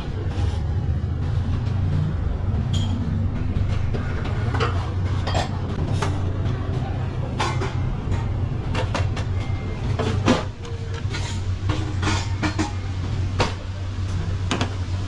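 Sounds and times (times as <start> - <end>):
low rumble of traffic: 0.0 - 15.0
dishes and cutlery clinking: 4.4 - 6.6, 7.2 - 13.6.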